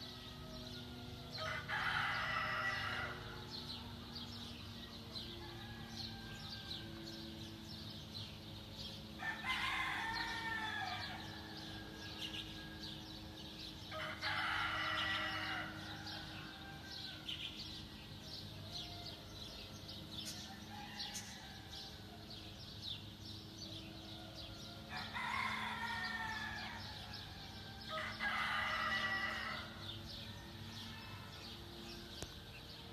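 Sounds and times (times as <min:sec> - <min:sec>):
rooster crowing: 0:00.2 - 0:03.8, 0:05.1 - 0:07.4, 0:09.2 - 0:17.6, 0:20.2 - 0:22.4, 0:23.8 - 0:32.3.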